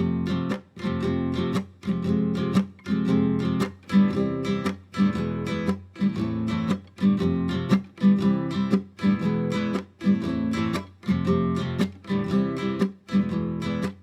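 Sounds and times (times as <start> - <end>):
acoustic guitar strumming chords: 0.0 - 14.0.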